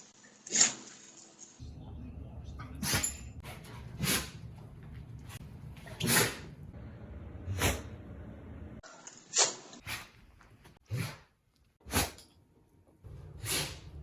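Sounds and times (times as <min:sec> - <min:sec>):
dog sneezing: 0:05.8 - 0:06.5, 0:07.5 - 0:08.0.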